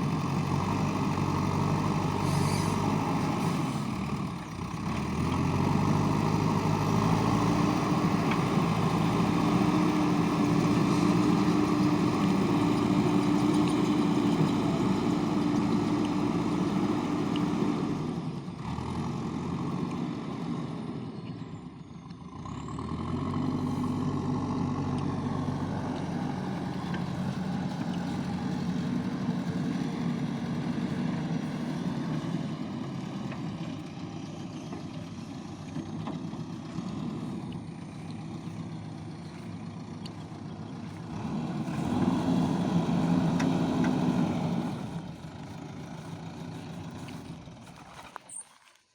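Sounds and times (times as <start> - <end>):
diesel engine running under load: 0.0 - 48.4.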